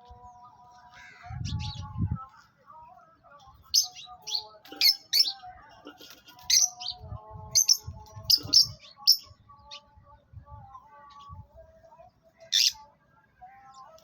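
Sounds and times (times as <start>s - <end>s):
birds chirping: 2.9s - 14.0s.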